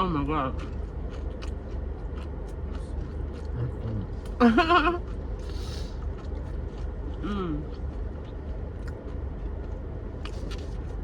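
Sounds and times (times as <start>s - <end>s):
steady low hum: 0.0s - 11.0s
faint chewing clicks: 0.6s - 4.4s, 5.0s - 11.0s
person humming mmm: 7.2s - 7.7s.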